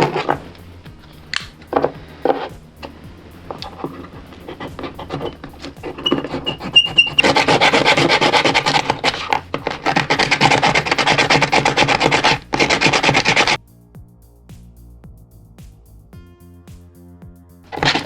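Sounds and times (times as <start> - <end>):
wooden parts rasping together: 0.0 - 13.6, 17.8 - 18.0.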